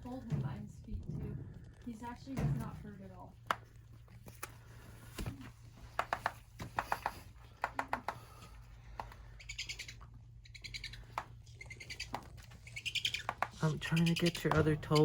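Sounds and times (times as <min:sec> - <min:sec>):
bird chirping trill: 0:09.4 - 0:15.0.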